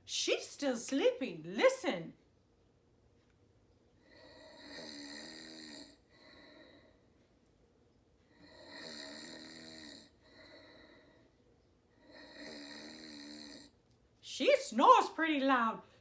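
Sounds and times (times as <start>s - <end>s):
soft breath out: 4.0s - 7.3s, 10.2s - 11.4s
person snoring loudly: 4.2s - 6.0s, 8.4s - 10.9s, 12.0s - 13.7s.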